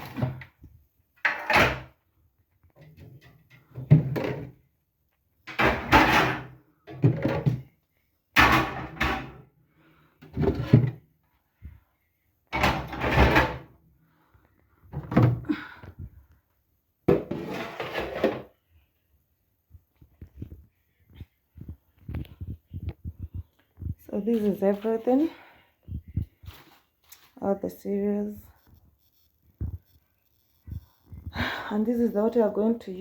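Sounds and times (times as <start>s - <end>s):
refrigerator drawers clattering: 12.6s - 13.7s.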